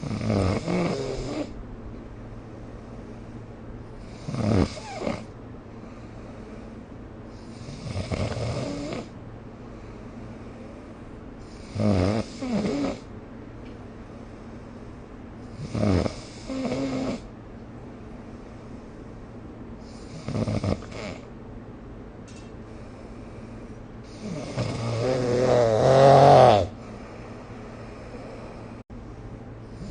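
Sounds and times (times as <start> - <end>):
person snoring: 0.0 - 1.6, 4.1 - 5.3, 11.6 - 13.1, 15.6 - 17.2, 24.1 - 27.1.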